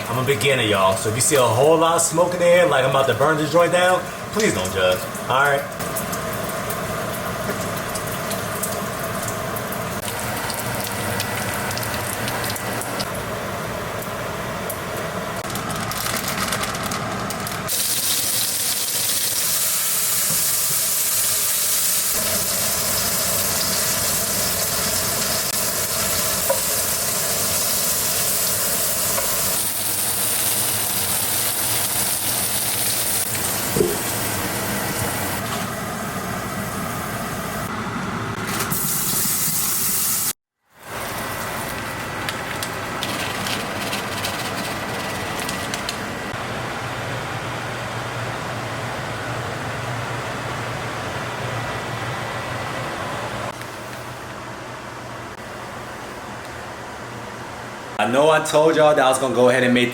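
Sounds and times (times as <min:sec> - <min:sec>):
food sizzling in a frying pan: 0:17.7 - 0:35.5.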